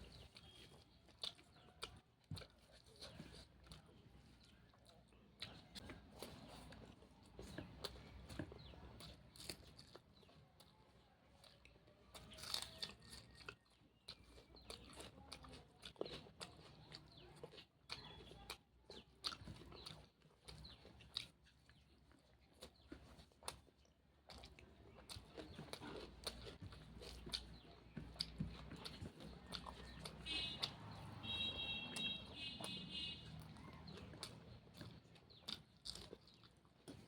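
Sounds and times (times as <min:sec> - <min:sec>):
person chewing food: 0:00.0 - 0:37.0.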